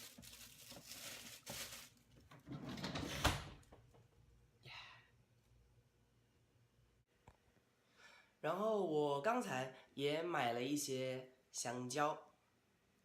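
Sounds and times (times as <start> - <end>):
plastic bag rustling: 0.0 - 2.5
refrigerator sliding shut: 2.4 - 3.6.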